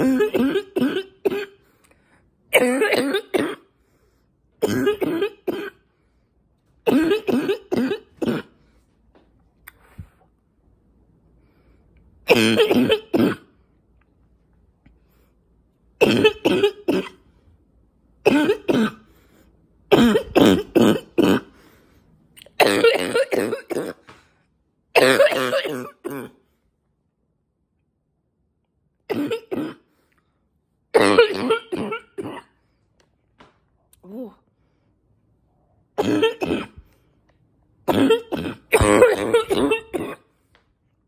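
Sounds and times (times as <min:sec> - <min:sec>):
woman coughing: 0:00.0 - 0:01.6, 0:02.5 - 0:03.7, 0:04.6 - 0:05.8, 0:06.9 - 0:08.6, 0:12.3 - 0:13.5, 0:16.0 - 0:17.2, 0:18.2 - 0:19.1, 0:19.9 - 0:21.5, 0:22.6 - 0:24.0, 0:25.0 - 0:26.4, 0:29.1 - 0:29.9, 0:31.0 - 0:32.6, 0:36.0 - 0:36.8, 0:37.9 - 0:40.3.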